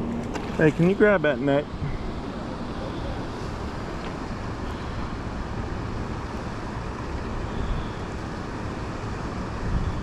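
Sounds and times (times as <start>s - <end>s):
wind buffeting microphone: 9.4s - 10.0s.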